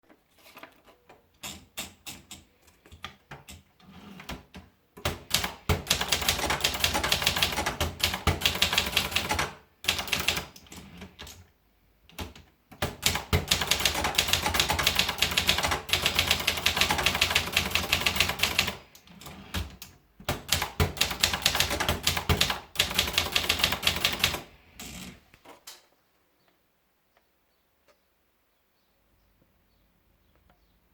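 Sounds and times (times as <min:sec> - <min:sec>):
typewriter keystrokes: 0:05.0 - 0:11.4, 0:12.1 - 0:24.5.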